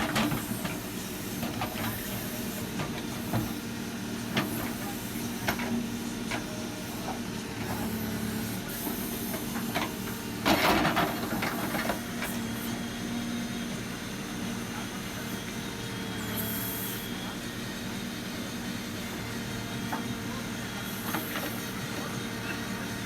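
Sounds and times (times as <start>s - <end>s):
backhoe engine running: 0.0s - 23.0s.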